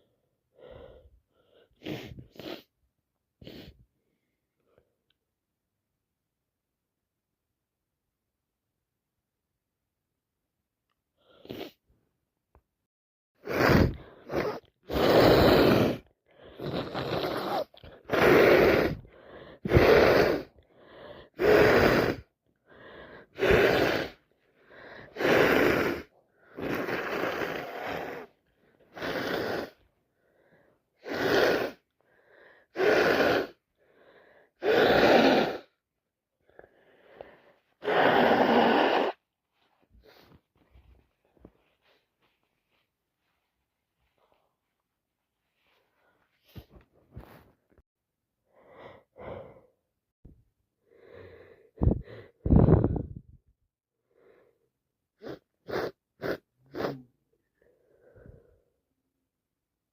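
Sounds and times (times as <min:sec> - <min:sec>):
person sniffing: 0:00.0 - 0:02.7, 0:03.4 - 0:03.8, 0:11.2 - 0:11.8, 0:13.4 - 0:29.8, 0:30.4 - 0:35.8, 0:36.6 - 0:39.2, 0:40.0 - 0:40.5, 0:55.2 - 0:57.2
person sneezing: 0:13.4 - 0:16.0, 0:34.6 - 0:35.8, 0:55.2 - 0:57.1
breathy gasps: 0:15.5 - 0:35.8, 0:48.5 - 0:49.8, 0:50.9 - 0:53.2.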